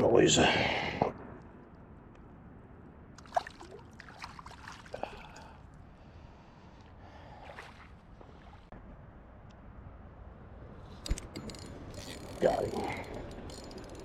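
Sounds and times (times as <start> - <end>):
creek water splashing: 3.2 - 5.7, 7.2 - 8.7.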